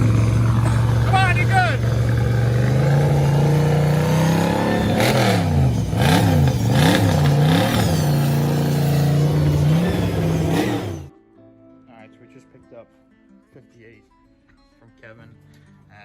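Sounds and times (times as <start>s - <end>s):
vehicle engine revving: 0.0s - 11.1s.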